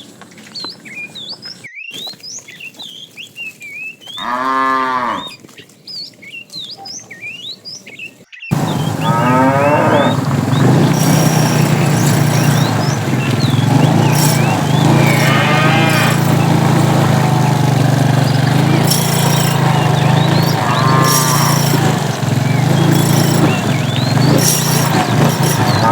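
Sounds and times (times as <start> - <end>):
birds chirping faintly: 0.0 - 25.9
cattle mooing: 4.2 - 5.4, 8.5 - 25.9
low engine hum: 8.5 - 25.9.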